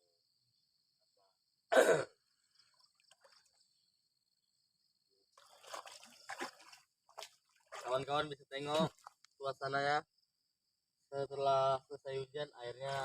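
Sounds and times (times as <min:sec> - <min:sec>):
person coughing: 0:01.7 - 0:02.2.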